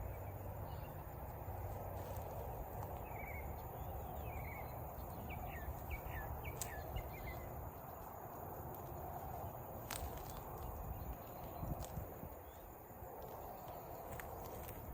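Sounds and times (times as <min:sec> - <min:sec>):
background hiss: 0:00.0 - 0:14.9
small bird chirping: 0:00.0 - 0:14.9.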